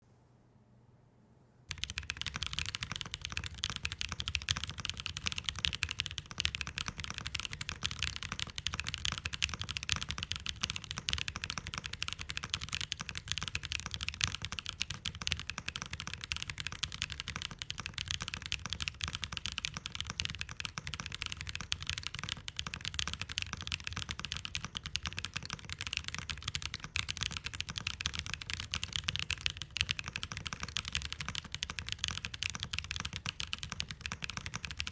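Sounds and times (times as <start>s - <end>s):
fast mechanical keyboard typing: 1.7s - 34.9s.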